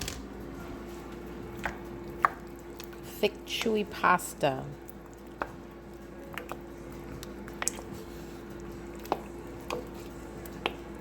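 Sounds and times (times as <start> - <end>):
steady hum: 0.0 - 11.0
pasta squishing in sauce: 4.7 - 11.0
utensil clicking against pot: 4.8 - 5.6, 6.2 - 7.9.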